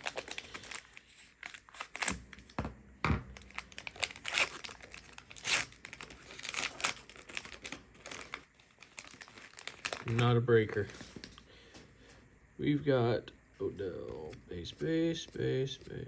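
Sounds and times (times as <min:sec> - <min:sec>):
scissors cutting plastic pack: 0:00.0 - 0:02.4, 0:03.4 - 0:10.3
plastic wrapper crinkling and tearing: 0:00.0 - 0:02.6, 0:03.3 - 0:11.4.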